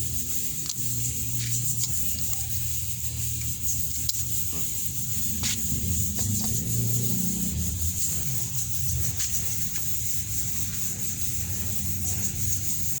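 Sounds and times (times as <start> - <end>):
abrasive rubbing on a blade: 0.0 - 13.0
faint ticks: 3.4 - 4.8.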